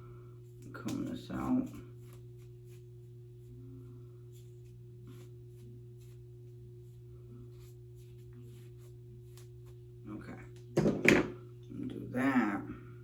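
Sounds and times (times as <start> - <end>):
low electrical hum: 0.0 - 13.0
comb brushing through wig: 4.2 - 9.9.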